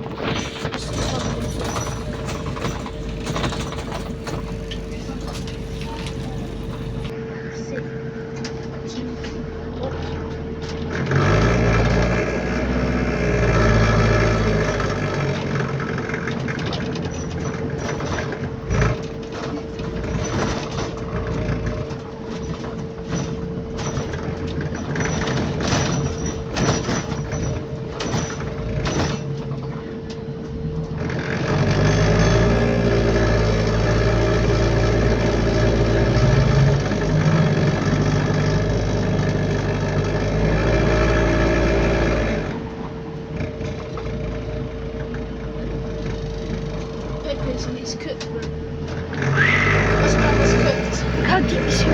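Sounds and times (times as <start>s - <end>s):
sharp knocks and rattles: 0.0s - 7.1s, 14.6s - 29.9s
bus engine rattly running: 0.0s - 7.3s, 7.9s - 51.9s
steady whine: 0.0s - 7.8s.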